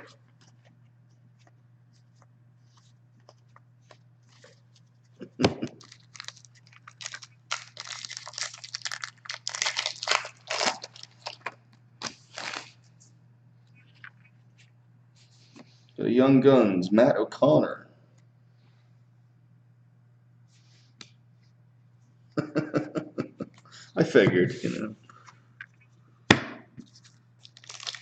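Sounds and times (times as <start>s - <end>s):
foil wrapper tearing and crinkling: 5.6s - 12.8s, 27.4s - 28.0s.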